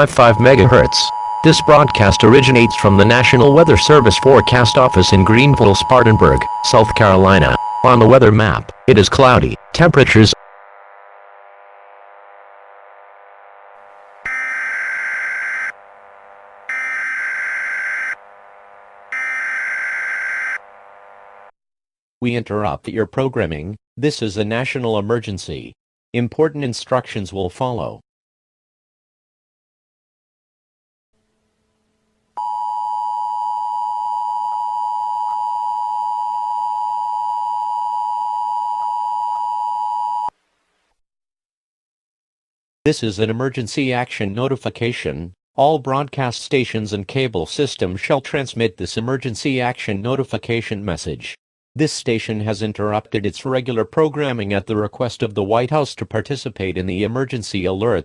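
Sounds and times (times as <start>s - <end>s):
buzzing digital data tones: 0.0s - 8.2s, 14.3s - 21.4s
faint steady hum: 0.0s - 21.5s.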